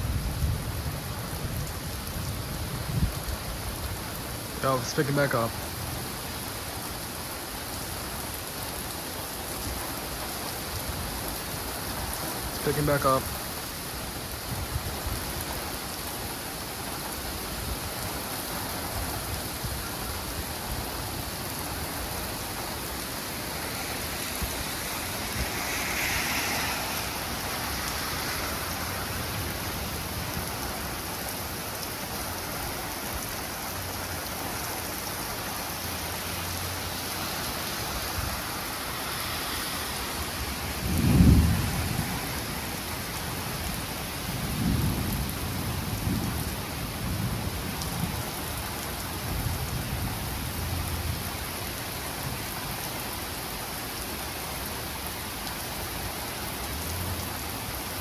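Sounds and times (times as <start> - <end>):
steady rain: 0.0 - 58.0
thunder rumble: 20.8 - 31.0, 40.0 - 42.8.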